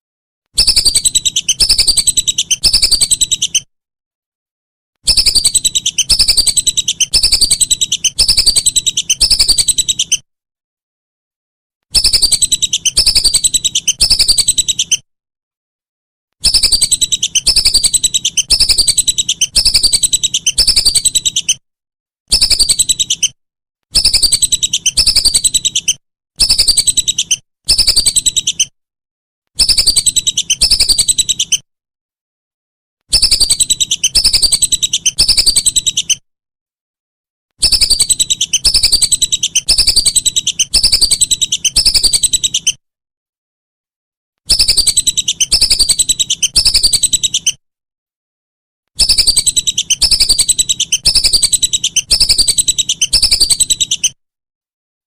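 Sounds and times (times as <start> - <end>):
bird trilling call: 0.6 - 3.7, 5.1 - 10.2.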